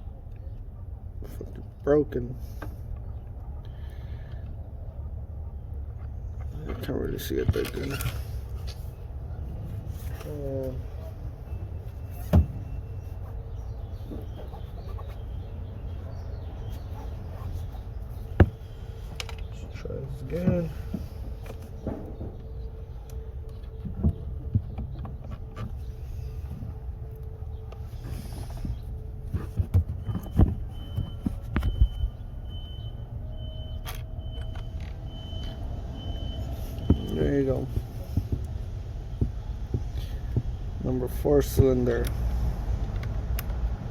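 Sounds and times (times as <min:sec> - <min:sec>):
faint chirping: 0:08.9 - 0:38.6.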